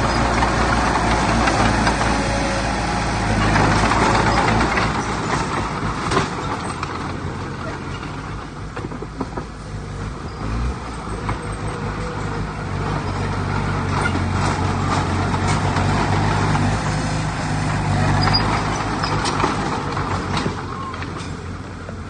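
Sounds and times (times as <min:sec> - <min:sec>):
knocks and clatter: 0:00.0 - 0:09.6, 0:10.8 - 0:21.6
heavy diesel machinery running: 0:00.0 - 0:22.0.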